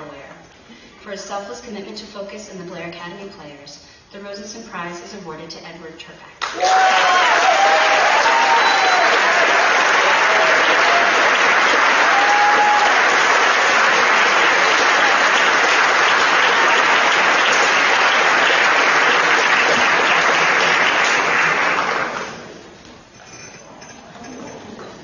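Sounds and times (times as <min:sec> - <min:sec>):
audience applauding: 0:06.4 - 0:22.6.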